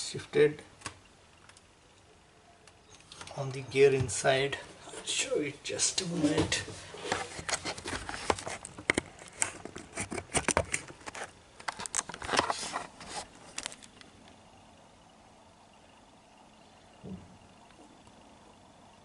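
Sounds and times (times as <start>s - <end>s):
plastic and metal parts clicking: 7.1s - 12.9s.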